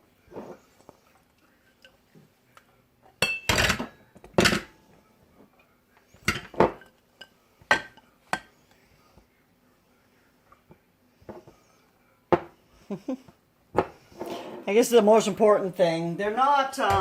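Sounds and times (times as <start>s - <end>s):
kitchenware clattering and clinking: 3.0s - 4.8s, 6.1s - 8.8s.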